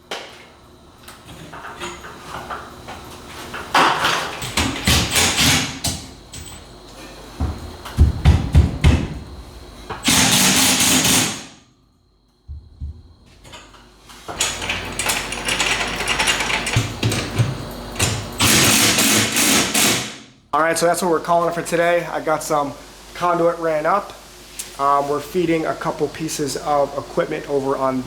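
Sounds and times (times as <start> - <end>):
heavy knocks: 7.4 - 9.2
loud burst of noise: 10.0 - 11.6.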